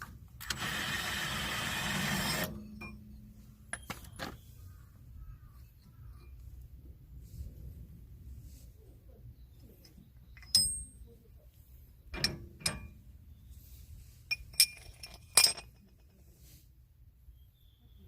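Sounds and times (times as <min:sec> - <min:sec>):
metal pieces clinking: 0:14.3 - 0:16.0.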